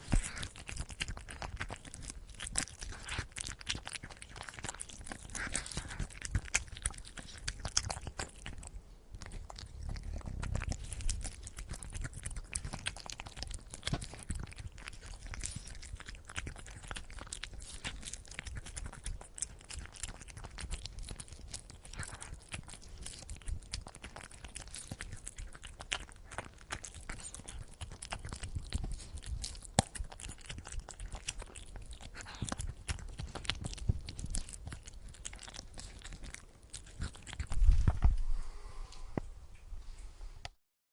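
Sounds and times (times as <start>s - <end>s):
cat chewing wet food: 0.0s - 38.2s
cat purring: 9.2s - 21.0s.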